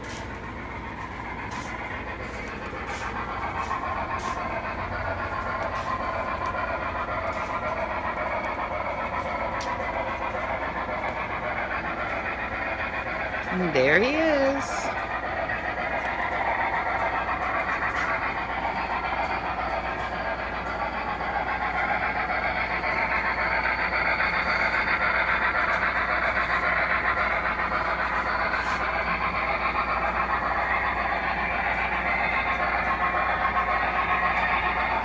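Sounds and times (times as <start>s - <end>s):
faint clicks over rails: 0.0s - 13.5s
model train rolling whir: 0.0s - 35.0s.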